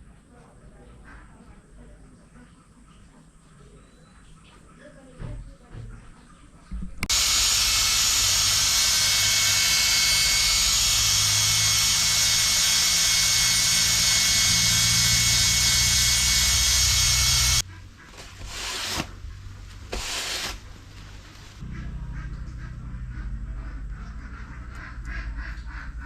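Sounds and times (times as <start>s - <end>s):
low hum: 6.8s - 26.0s
workshop machine hissing: 7.1s - 17.6s.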